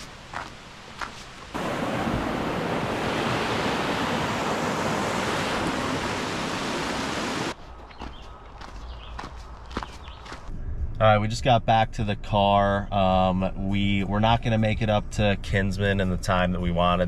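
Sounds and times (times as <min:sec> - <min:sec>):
rushing water: 0:00.0 - 0:07.6.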